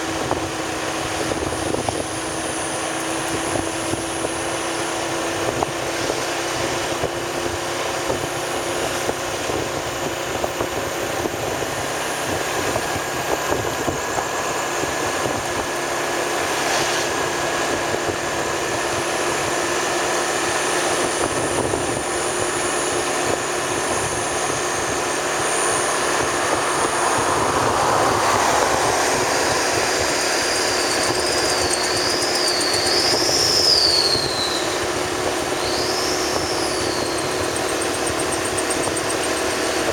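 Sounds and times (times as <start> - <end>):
vehicle engine and road noise: 0.0 - 39.9
high wavering whistle tone: 23.5 - 39.8.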